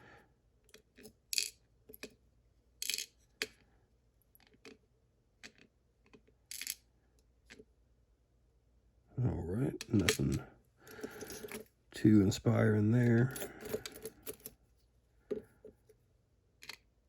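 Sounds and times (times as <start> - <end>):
metallic clicks of lock parts: 13.2 - 14.6.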